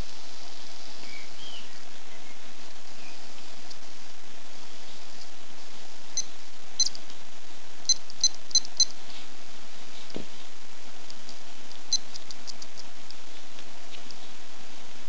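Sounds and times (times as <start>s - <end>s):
steady hiss: 0.0s - 15.0s
digital watch squeaky chirps: 6.2s - 7.0s, 7.9s - 8.9s, 11.9s - 12.2s.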